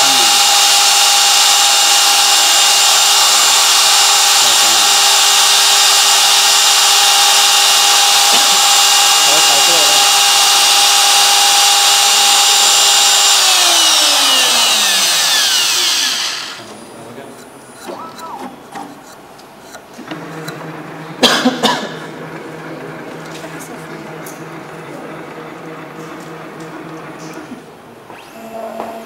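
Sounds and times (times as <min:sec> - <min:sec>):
router spindle motor whining: 0:00.0 - 0:16.8, 0:17.4 - 0:21.2, 0:22.1 - 0:29.0.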